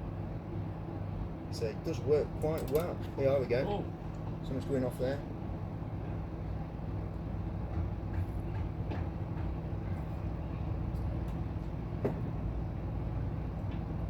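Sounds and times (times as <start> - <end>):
microwave oven hum: 0.0 - 14.0.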